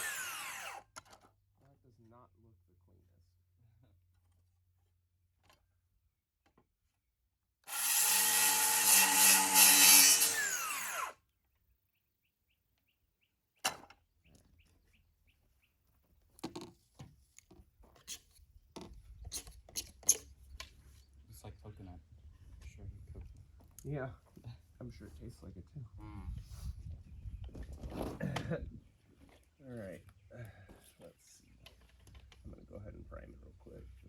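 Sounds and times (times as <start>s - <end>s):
power saw cutting pipe: 0.0s - 0.9s, 7.6s - 11.2s.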